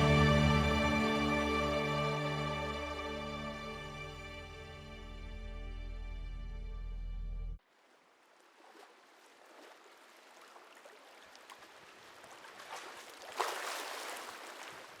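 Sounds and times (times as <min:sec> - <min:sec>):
water lapping and trickling: 0:07.6 - 0:15.0.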